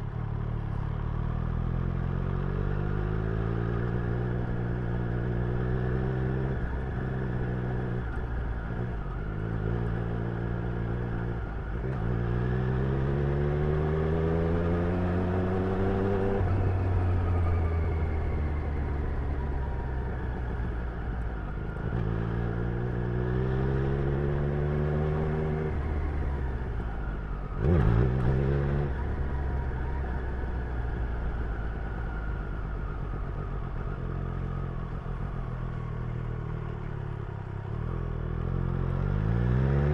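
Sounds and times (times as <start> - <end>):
motorcycle engine revving: 8.7 - 17.6.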